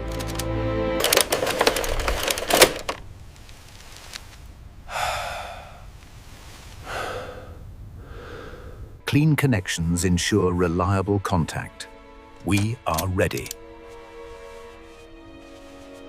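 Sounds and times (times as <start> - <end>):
breathy sighs: 4.8 - 6.0, 6.8 - 9.0
telegraph key clicking: 12.5 - 13.6.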